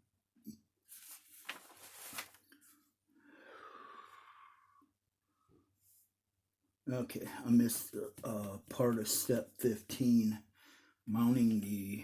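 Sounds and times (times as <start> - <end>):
soft breathy exhale: 3.2 - 4.8.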